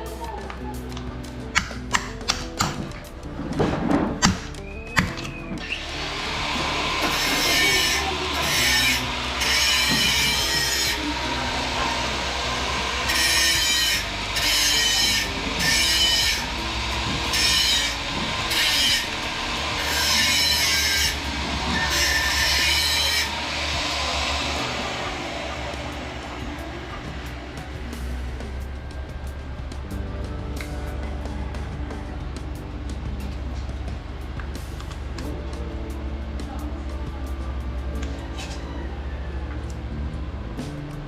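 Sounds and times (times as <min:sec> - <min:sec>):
low hum: 0:00.0 - 0:41.0
hand tool rasping on surface: 0:06.3 - 0:26.6.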